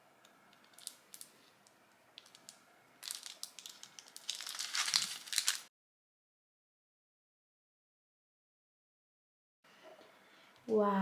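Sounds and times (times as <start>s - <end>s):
crinkling and crunching handling: 2.2s - 5.7s.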